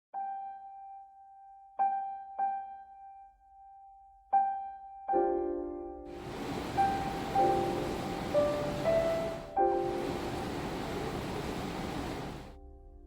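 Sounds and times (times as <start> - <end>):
keyboard chord: 5.2 - 13.0.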